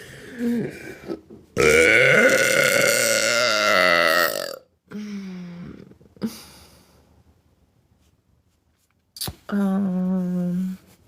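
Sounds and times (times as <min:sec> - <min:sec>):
woman burping: 0:01.6 - 0:04.7.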